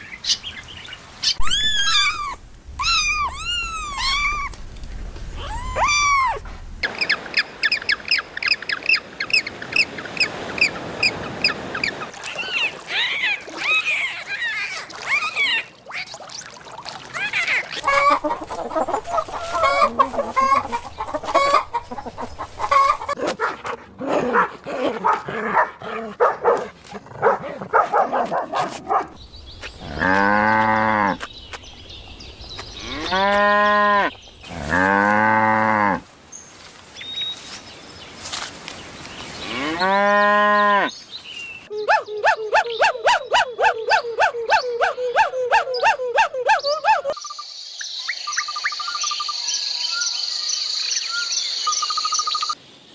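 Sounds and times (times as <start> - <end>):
chickens clucking: 17.3 - 23.8
cow mooing: 32.8 - 36.1.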